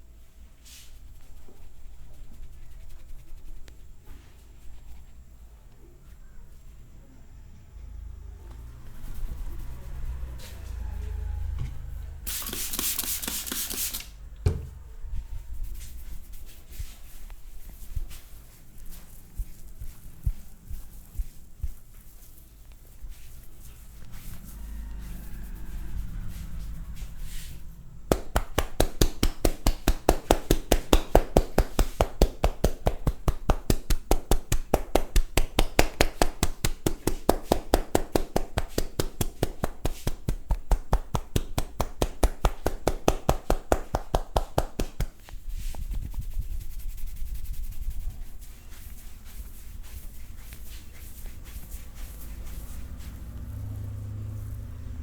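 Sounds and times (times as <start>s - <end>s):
hands rubbing skin: 0.7s - 5.4s, 8.8s - 10.7s, 12.3s - 14.2s, 15.6s - 53.6s
hands slapping body: 28.1s - 45.9s.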